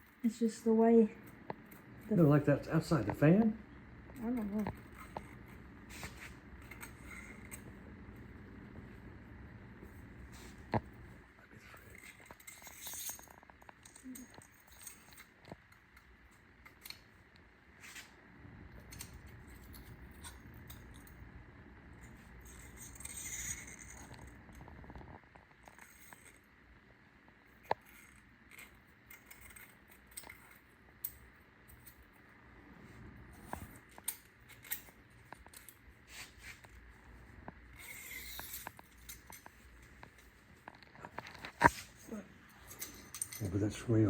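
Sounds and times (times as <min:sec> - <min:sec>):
metal clink and rattle: 0:11.7 - 0:17.1, 0:18.8 - 0:21.1, 0:22.4 - 0:24.4, 0:27.7 - 0:32.1, 0:33.4 - 0:35.8, 0:37.8 - 0:40.0, 0:42.5 - 0:43.8.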